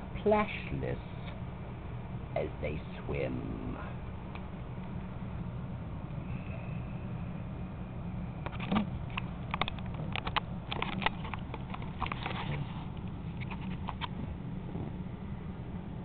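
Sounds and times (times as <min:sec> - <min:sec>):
steady low hum: 0:00.0 - 0:16.0
irregular clicks and taps: 0:08.4 - 0:12.4.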